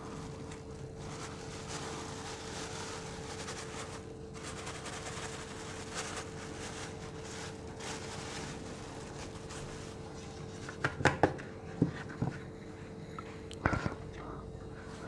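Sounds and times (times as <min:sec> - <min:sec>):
powder rustling into container: 0:00.0 - 0:11.0
steady low hum: 0:00.0 - 0:15.0.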